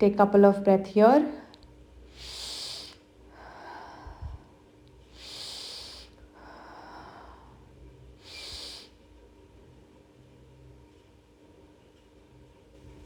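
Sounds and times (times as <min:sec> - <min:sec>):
person breathing deeply: 0:02.1 - 0:09.0.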